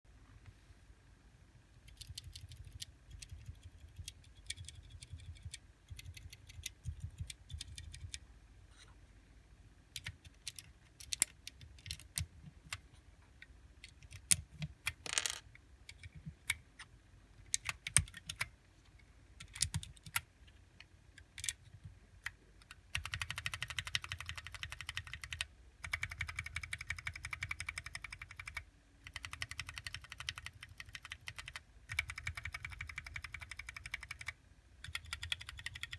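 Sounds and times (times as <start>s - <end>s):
mechanical keyboard keys clacking: 1.9s - 8.2s, 19.4s - 20.2s, 22.6s - 35.9s.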